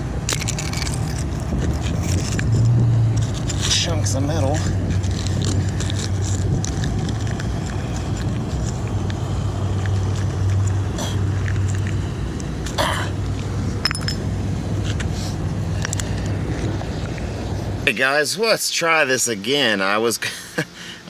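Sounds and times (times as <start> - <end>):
low steady hum: 0.0 - 21.0
scrap metal clinking: 13.8 - 14.2.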